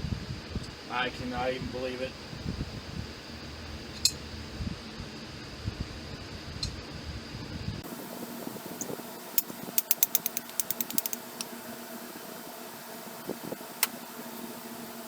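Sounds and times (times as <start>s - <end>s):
steady hum: 0.0s - 15.0s
sharp clicks: 8.8s - 11.5s.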